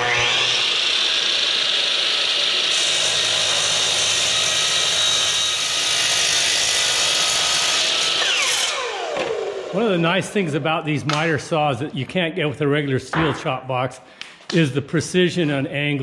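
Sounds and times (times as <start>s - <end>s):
miter saw motor whining: 0.0s - 3.2s, 7.8s - 9.8s.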